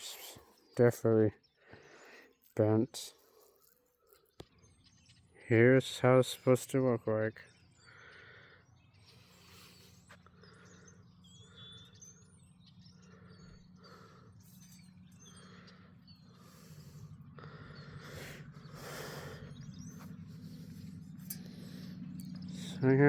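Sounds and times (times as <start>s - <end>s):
small birds chirping: 0.0s - 23.0s
low steady hum: 7.5s - 23.0s.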